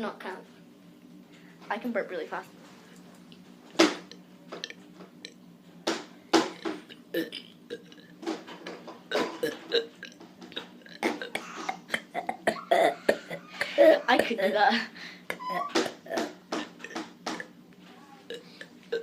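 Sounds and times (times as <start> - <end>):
person burping: 6.9 - 8.1, 9.1 - 14.6, 15.3 - 17.6, 18.3 - 19.0.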